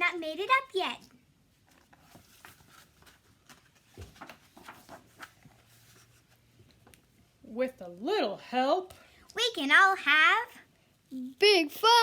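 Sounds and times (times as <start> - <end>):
faint rustles and taps: 1.0 - 7.4.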